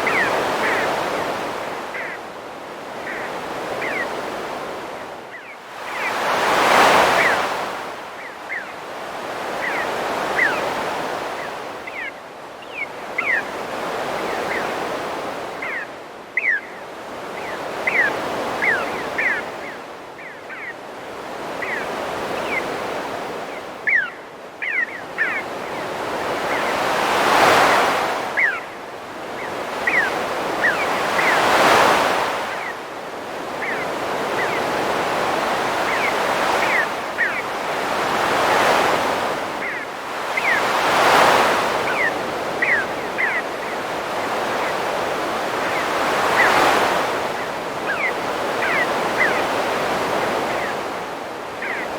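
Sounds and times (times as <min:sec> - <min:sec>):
birds chirping: 0:00.0 - 0:02.3, 0:02.9 - 0:51.9
ocean waves breaking: 0:00.0 - 0:11.8, 0:24.7 - 0:51.9.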